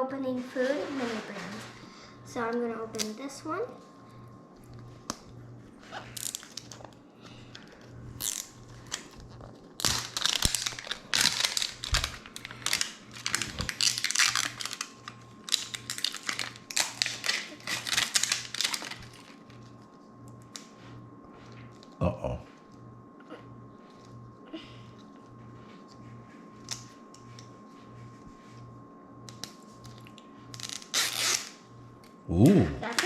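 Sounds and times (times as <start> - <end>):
packaging crinkling and tearing: 4.6 - 7.0, 7.6 - 19.8, 29.3 - 31.6.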